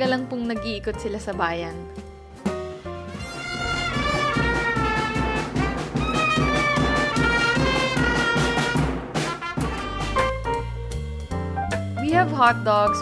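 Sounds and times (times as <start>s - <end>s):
steady drum beat: 2.5s - 12.2s
trumpets and trombones: 2.7s - 10.7s.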